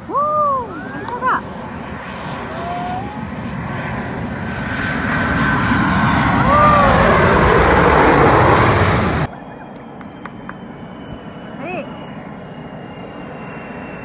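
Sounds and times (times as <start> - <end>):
jet airliner passing overhead: 0.0 - 14.0
person exclaiming: 6.4 - 7.2.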